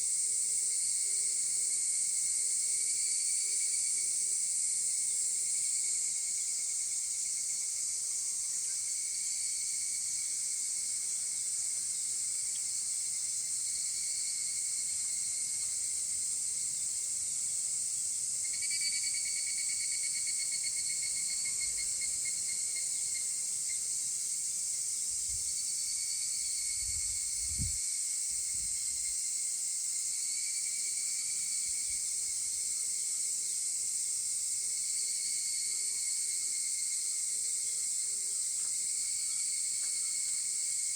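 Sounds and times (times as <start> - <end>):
high-pitched insect chorus: 0.0 - 40.9
cicadas calling: 11.3 - 29.3.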